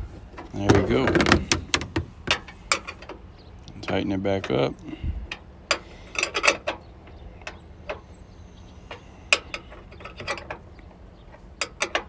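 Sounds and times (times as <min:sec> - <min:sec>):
hand tools clinking: 0:00.4 - 0:03.2, 0:05.7 - 0:06.8, 0:08.8 - 0:10.7
wrench clicking on a bolt: 0:05.3 - 0:06.8.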